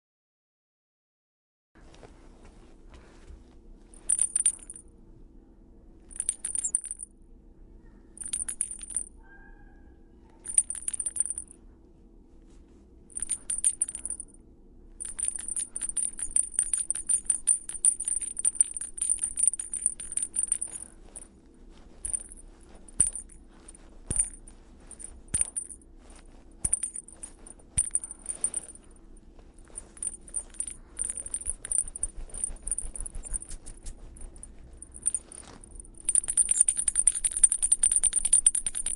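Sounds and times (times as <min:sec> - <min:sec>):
toy bell jingling: 0:04.1 - 0:04.8, 0:06.1 - 0:07.0, 0:08.2 - 0:09.2, 0:10.4 - 0:11.5, 0:13.1 - 0:14.3, 0:15.0 - 0:21.2, 0:21.9 - 0:25.8, 0:26.6 - 0:28.9, 0:29.6 - 0:38.9.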